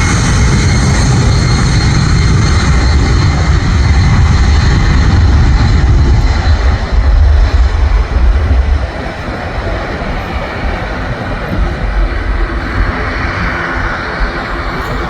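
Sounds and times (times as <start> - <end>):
jet engines rumbling and whining: 0.0 - 15.0.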